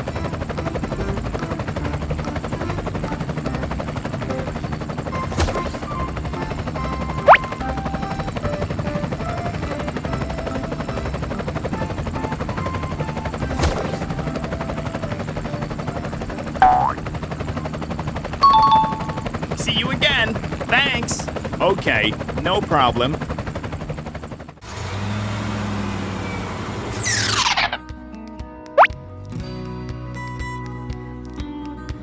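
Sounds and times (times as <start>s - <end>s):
small engine chugging: 0.0s - 24.5s.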